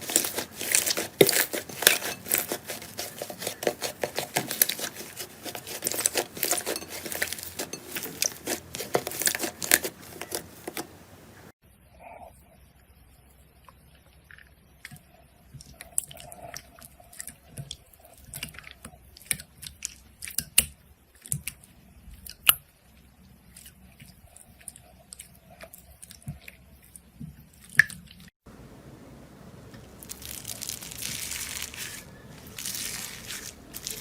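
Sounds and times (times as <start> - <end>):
slime squeezed by hand: 30.0 - 34.0.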